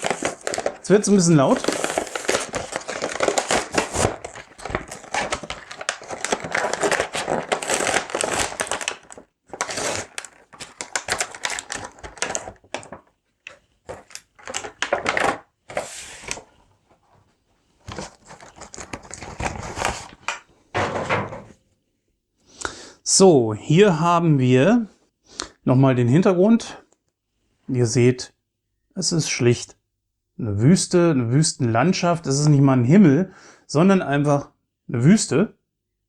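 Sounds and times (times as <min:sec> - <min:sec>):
packaging crinkling: 0:00.0 - 0:16.6, 0:17.8 - 0:20.4.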